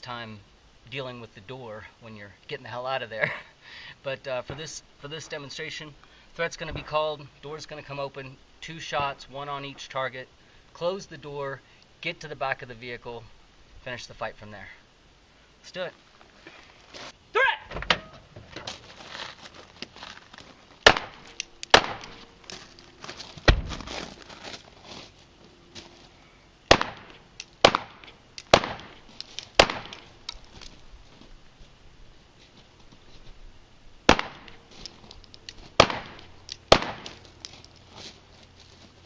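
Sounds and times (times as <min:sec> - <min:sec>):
pistol shots: 0:20.8 - 0:22.2, 0:26.7 - 0:29.0, 0:29.6 - 0:30.1, 0:34.1 - 0:34.6, 0:35.8 - 0:37.2.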